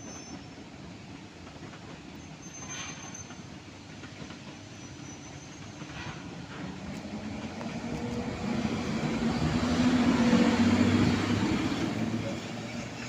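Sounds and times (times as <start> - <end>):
train passing: 0.0 - 13.0.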